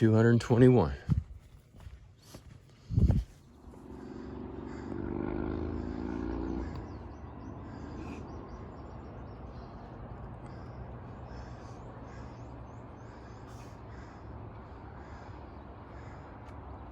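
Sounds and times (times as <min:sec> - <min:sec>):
vehicle engine rumble: 0:00.0 - 0:16.9.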